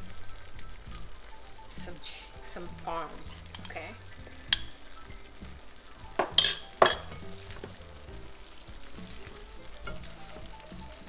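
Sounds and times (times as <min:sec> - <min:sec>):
sauce sizzling and bubbling in pan: 0:00.0 - 0:11.0
sharp clinks against pan: 0:06.2 - 0:07.8.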